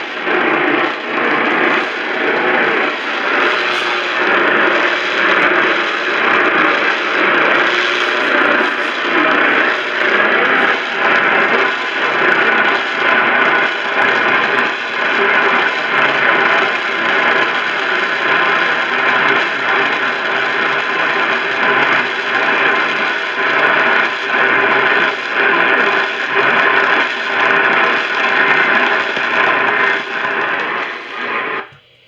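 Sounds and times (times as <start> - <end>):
radio static hiss: 0.0 - 32.0.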